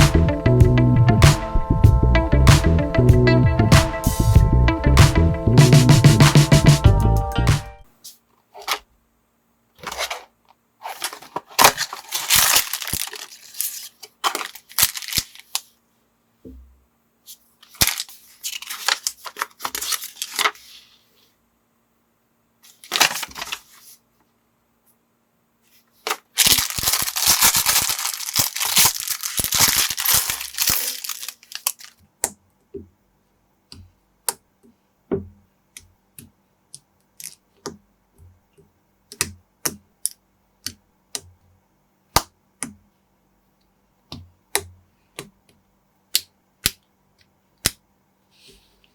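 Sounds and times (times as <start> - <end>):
plastic packaging crinkling and tearing: 10.8 - 15.8, 17.6 - 20.6, 22.7 - 23.8, 26.1 - 32.0
plastic building bricks clicking: 26.1 - 32.0.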